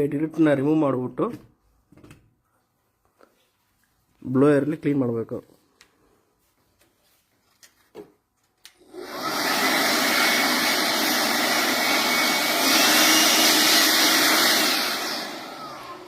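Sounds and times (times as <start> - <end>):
electric air blower running: 8.8 - 16.0.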